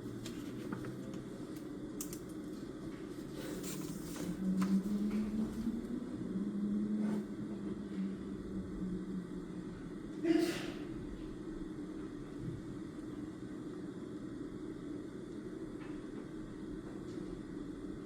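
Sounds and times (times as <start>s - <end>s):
steady low hum: 0.0s - 18.0s
wavering low drone: 3.6s - 10.2s.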